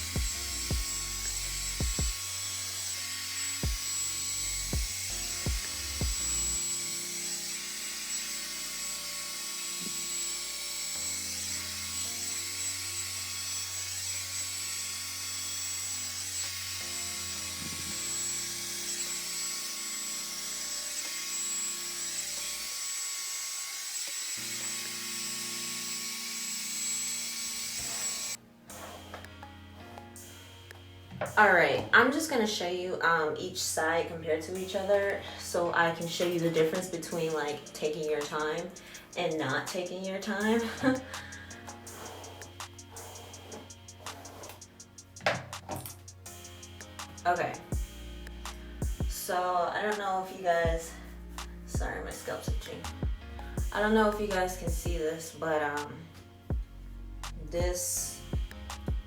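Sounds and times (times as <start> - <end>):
faint background music: 0.0 - 22.9, 24.4 - 59.0
hair dryer brush running: 0.0 - 29.1, 34.6 - 44.9, 46.4 - 49.3, 51.5 - 55.1.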